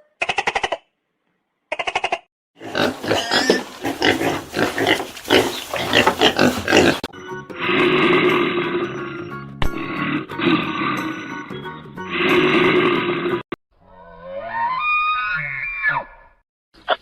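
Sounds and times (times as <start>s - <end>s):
pig grunting: 2.6s - 11.2s, 12.1s - 13.4s.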